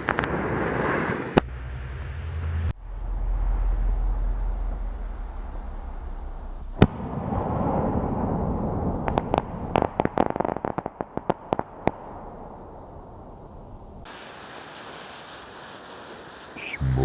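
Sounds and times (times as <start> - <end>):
firework bang: 2.7 - 12.6
crackling pops: 9.1 - 12.0
rushing hiss: 14.1 - 17.0.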